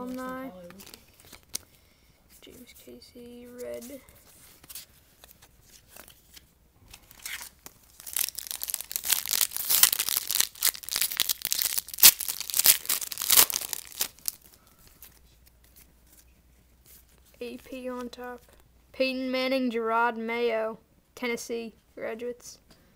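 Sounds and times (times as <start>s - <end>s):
wrapper tearing and crinkling: 0.0s - 1.7s, 5.2s - 15.2s.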